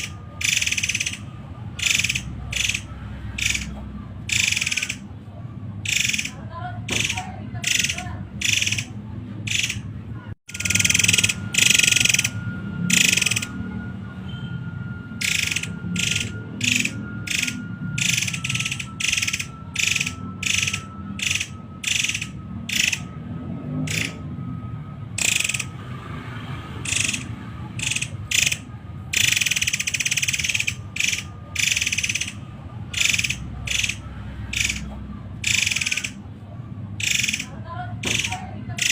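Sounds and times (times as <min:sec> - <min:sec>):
bird harsh shrill calls: 0:00.0 - 0:05.1, 0:15.2 - 0:23.1, 0:26.8 - 0:36.2.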